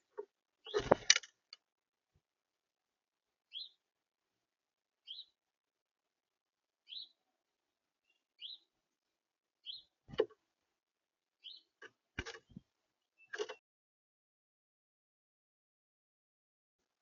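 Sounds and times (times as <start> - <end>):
bird chirping: 0.6 - 1.1, 3.5 - 3.8, 5.0 - 5.4, 6.8 - 7.2, 8.0 - 8.7, 9.6 - 10.0, 11.4 - 11.8, 12.5 - 13.6.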